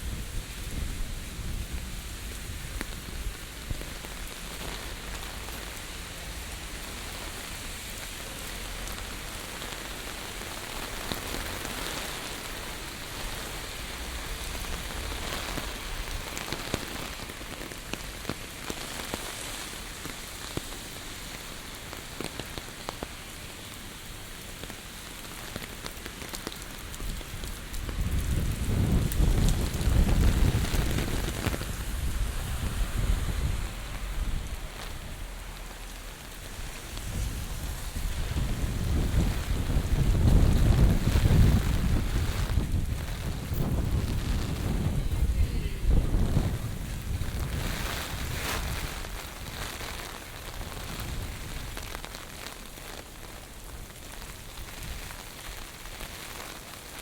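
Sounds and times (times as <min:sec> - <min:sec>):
heavy rain pattering: 0:00.0 - 0:57.0
strong wind gust: 0:27.2 - 0:35.5, 0:36.4 - 0:49.8.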